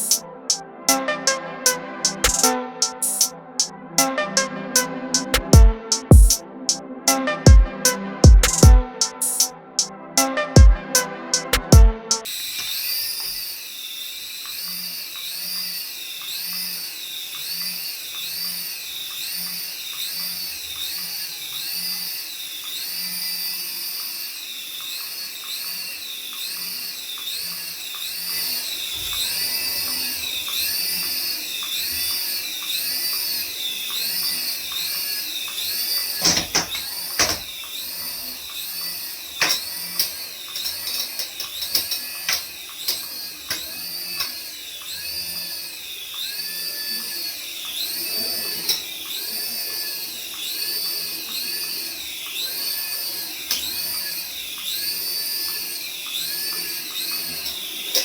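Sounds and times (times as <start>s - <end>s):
warbling electronic toy whine: 0.0s - 58.0s
sharp clicks and knocks: 35.5s - 37.8s, 39.4s - 45.0s.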